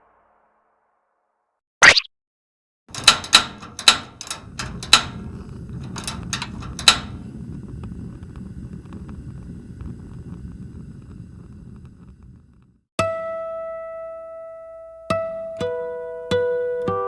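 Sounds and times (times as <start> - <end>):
steady low rumble: 5.2 - 12.8.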